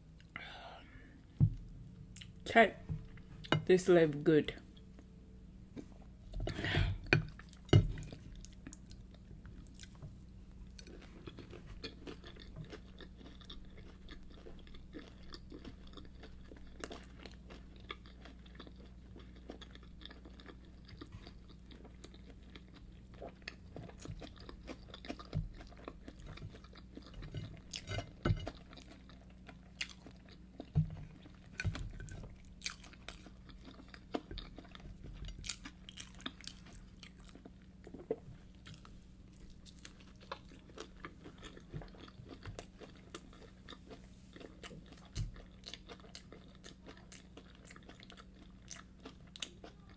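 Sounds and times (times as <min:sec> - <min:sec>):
faint low hum: 0:00.0 - 0:49.9
person chewing crunchy food: 0:10.6 - 0:49.9.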